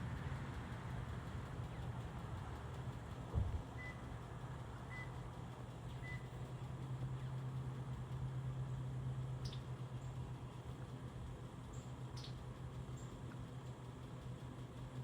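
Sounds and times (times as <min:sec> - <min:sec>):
low engine-like hum: 0:00.0 - 0:15.0.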